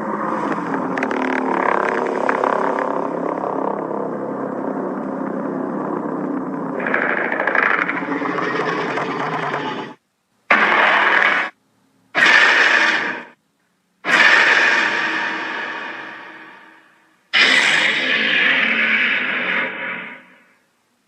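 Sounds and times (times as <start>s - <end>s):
monster roaring and growling: 6.8s - 11.5s, 17.4s - 20.4s.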